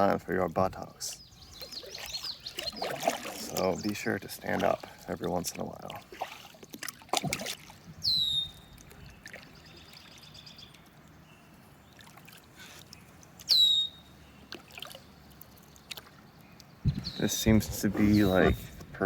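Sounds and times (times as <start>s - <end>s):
bird calling: 1.1s - 4.1s, 7.9s - 11.6s, 13.4s - 14.6s, 16.5s - 19.0s.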